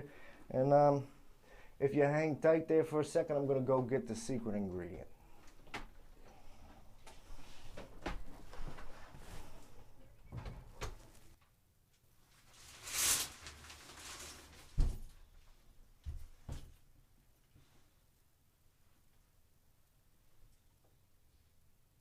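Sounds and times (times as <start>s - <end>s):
knocks and bumps in a room: 14.7s - 16.8s.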